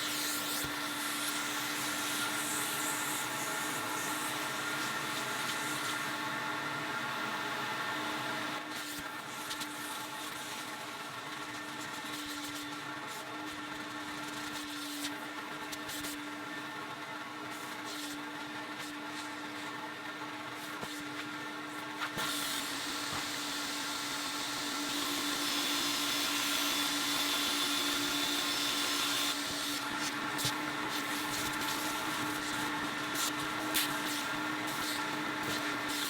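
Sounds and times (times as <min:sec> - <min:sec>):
vacuum motor whining: 0:16.6 - 0:36.0.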